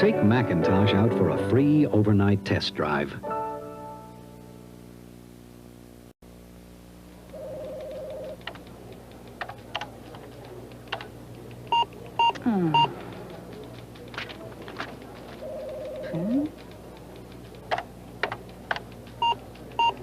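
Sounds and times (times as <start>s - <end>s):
steady low hum: 0.0s - 20.0s
keyboard keys clicking: 7.3s - 20.0s.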